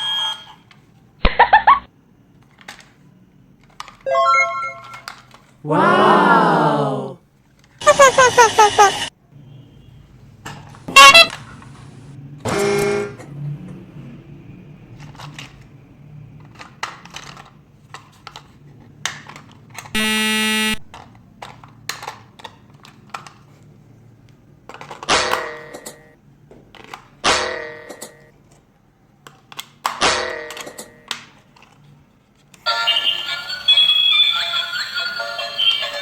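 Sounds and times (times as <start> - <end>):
toy train horn tooting: 10.9 - 11.4, 20.0 - 20.8.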